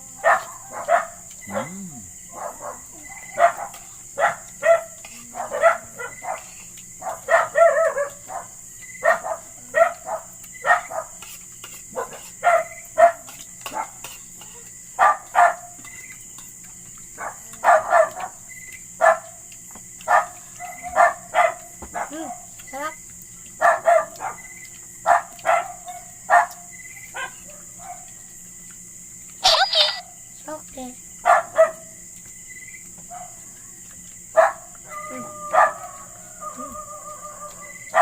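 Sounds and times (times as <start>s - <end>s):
dog barking and yapping: 0.0s - 1.7s, 2.3s - 14.1s, 15.0s - 15.8s, 17.1s - 18.4s, 19.0s - 19.4s, 20.0s - 22.6s, 23.4s - 28.2s, 29.4s - 30.2s, 31.2s - 32.0s, 33.0s - 33.4s, 34.3s - 38.0s.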